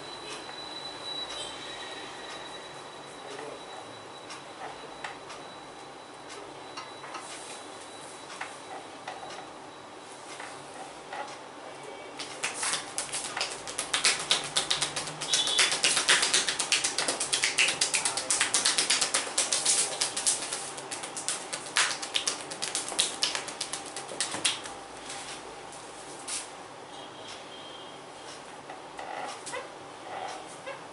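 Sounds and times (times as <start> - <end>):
hands slapping a bare back: 12.2 - 24.8.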